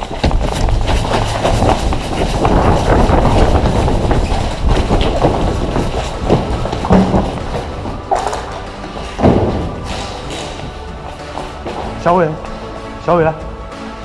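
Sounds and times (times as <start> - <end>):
equipment jostling: 0.0 - 13.0
footsteps running: 0.0 - 13.0.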